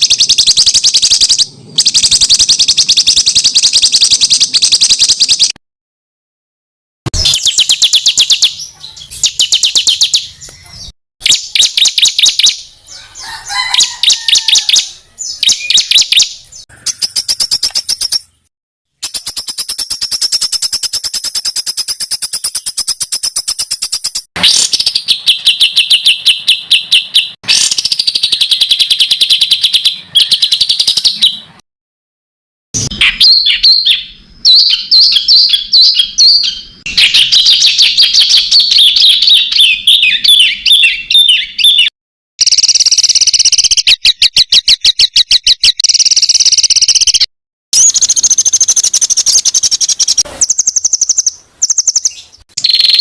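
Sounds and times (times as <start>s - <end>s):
songbird chirping: 0.0s - 5.6s, 7.1s - 31.6s, 32.8s - 41.9s, 42.5s - 53.0s.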